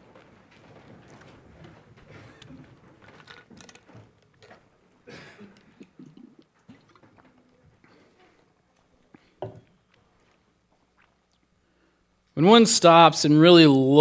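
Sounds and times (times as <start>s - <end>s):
congregation rustling in seats: 0.0s - 5.8s.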